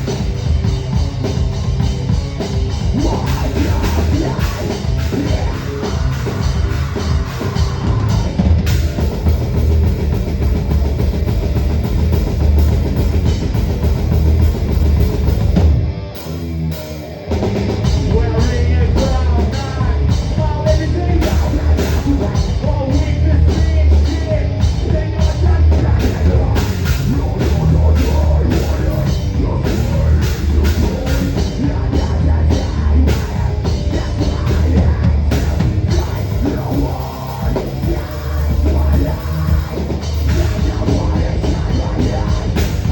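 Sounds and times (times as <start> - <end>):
heavy metal band playing: 0.0 - 42.9.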